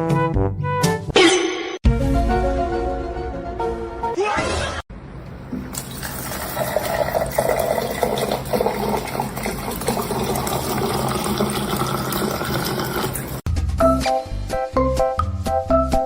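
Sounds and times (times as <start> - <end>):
water running: 5.2 - 13.5.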